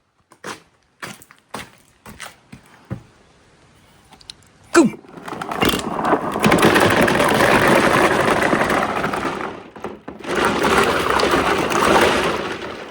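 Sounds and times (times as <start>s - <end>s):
marbles rattling down track: 5.1s - 12.9s.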